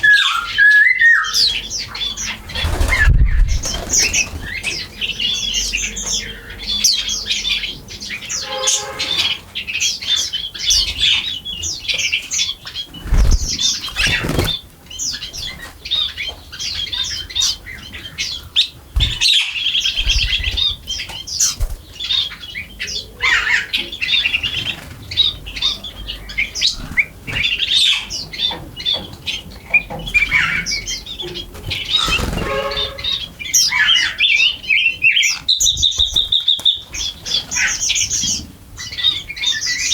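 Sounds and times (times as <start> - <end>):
birds chirping: 0.0 - 39.9
harsh low bird calls: 0.0 - 39.9
wings fluttering: 2.4 - 4.8, 12.9 - 14.7, 19.0 - 21.9, 31.6 - 33.2.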